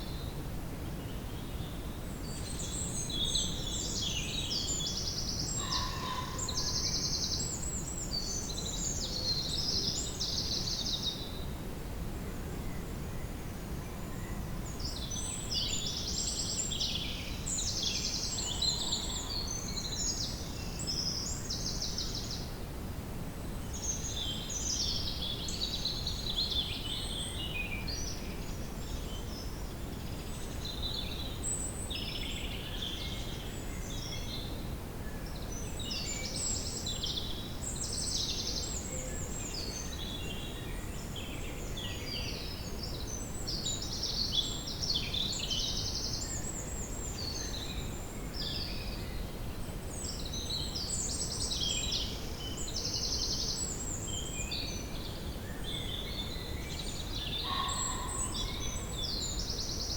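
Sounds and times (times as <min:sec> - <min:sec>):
songbirds singing and chirping: 0:23.6 - 0:59.9.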